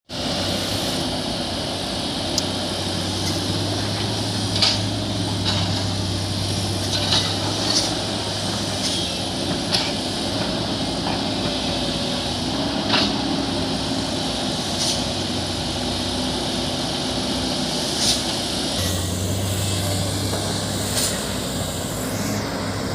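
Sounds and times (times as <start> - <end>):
diesel machinery drone: 0.1 - 22.9.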